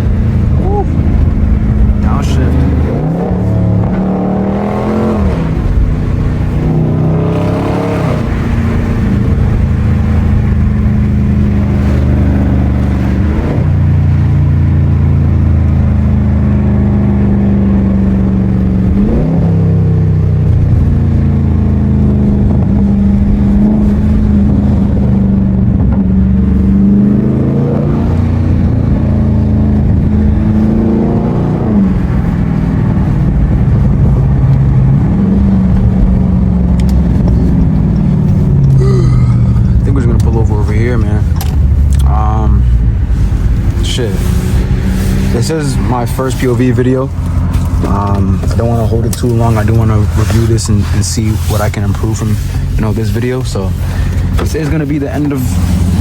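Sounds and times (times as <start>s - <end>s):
car engine driving: 0.0s - 56.0s.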